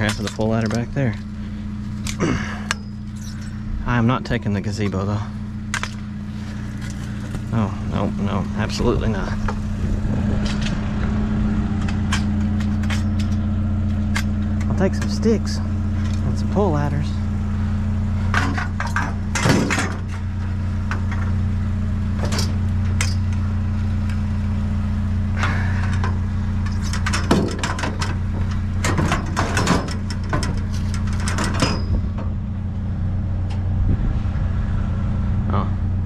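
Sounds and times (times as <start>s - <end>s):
truck engine idling: 0.0s - 36.0s
metal pieces knocking and clanking: 2.0s - 3.6s, 11.8s - 13.5s, 18.3s - 20.2s, 22.2s - 23.4s, 25.8s - 32.0s.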